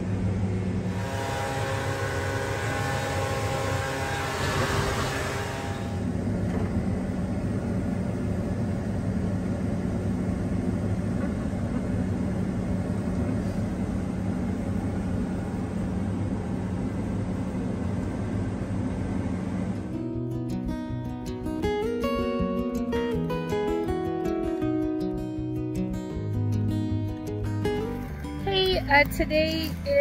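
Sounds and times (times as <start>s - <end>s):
diesel engine droning: 0.0s - 30.0s.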